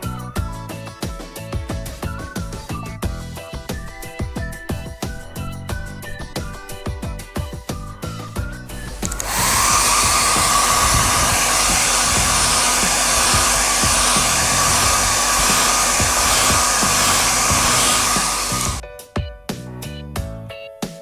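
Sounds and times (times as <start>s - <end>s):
electric blower motor humming: 8.7s - 18.8s.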